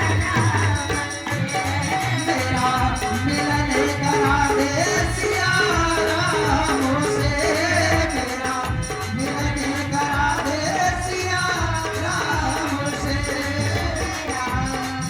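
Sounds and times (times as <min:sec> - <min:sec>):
tabla rhythm: 0:00.0 - 0:15.0
organ melody: 0:03.6 - 0:08.6.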